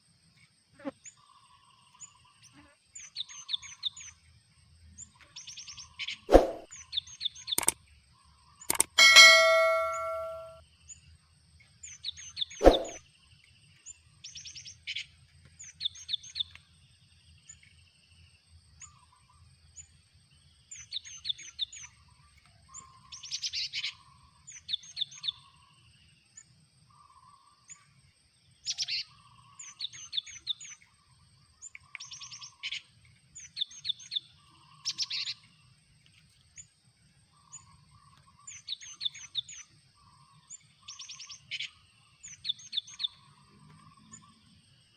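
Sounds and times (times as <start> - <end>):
sharp knock: 8.7 - 10.6
birds chirping: 8.8 - 10.6.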